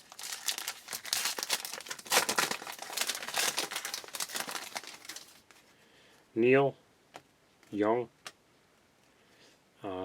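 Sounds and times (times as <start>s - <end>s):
foil wrapper crinkling and tearing: 0.0s - 5.5s.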